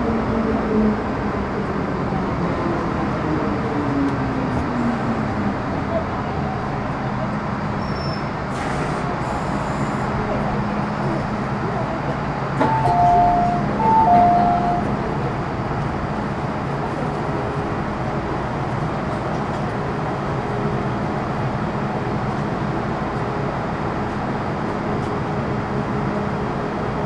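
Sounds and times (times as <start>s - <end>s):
train interior noise: 0.0s - 27.0s
two-note chime: 12.7s - 14.8s.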